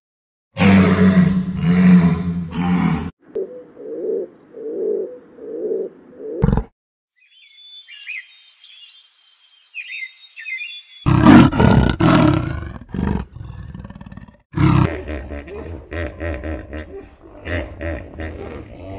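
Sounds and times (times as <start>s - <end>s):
animal roaring: 0.6s - 3.1s, 11.1s - 18.9s
faint high chirping calls: 7.1s - 11.1s.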